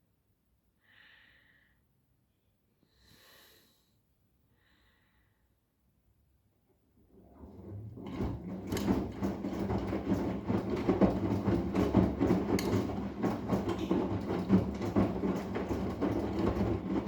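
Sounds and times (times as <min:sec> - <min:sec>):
laundry and water churning: 0:07.0 - 0:17.0
washing machine motor hum: 0:07.0 - 0:17.0.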